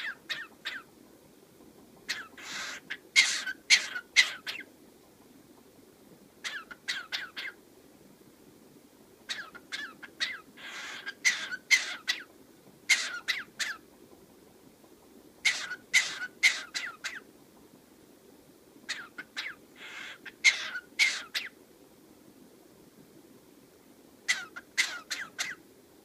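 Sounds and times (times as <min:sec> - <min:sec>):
cockatiel chirping: 0:00.0 - 0:00.8, 0:02.1 - 0:04.6, 0:06.4 - 0:07.6, 0:09.3 - 0:12.2, 0:12.9 - 0:13.8, 0:15.5 - 0:17.2, 0:18.9 - 0:21.5, 0:24.3 - 0:25.6.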